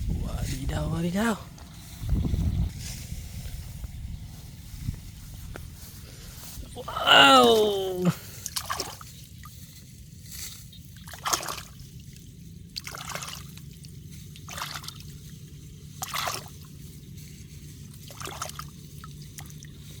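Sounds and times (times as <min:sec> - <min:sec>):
low steady hum: 0:00.0 - 0:20.0
water splashing: 0:06.4 - 0:09.6, 0:11.0 - 0:15.2, 0:15.9 - 0:16.7, 0:17.9 - 0:19.7.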